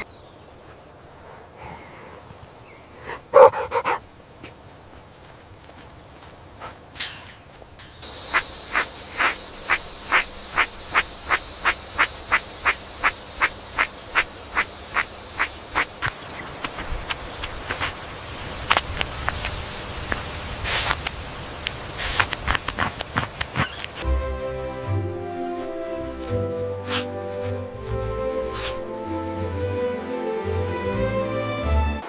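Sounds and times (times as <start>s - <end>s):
insects buzzing: 7.3s - 24.2s, 24.8s - 30.2s
insect chirps: 7.5s - 24.0s, 25.3s - 29.7s
insect clicks: 8.0s - 24.0s.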